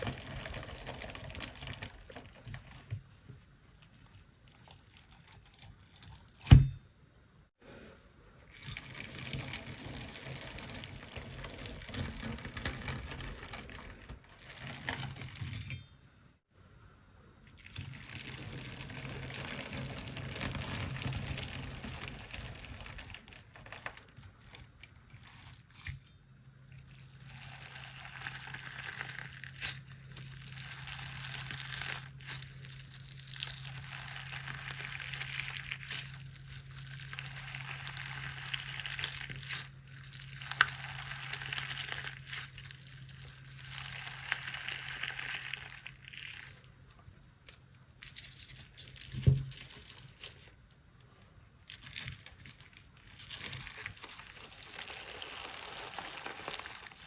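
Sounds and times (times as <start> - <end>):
crunchy slime crackling: 17.8 - 24.5, 26.8 - 46.9, 51.6 - 57.0.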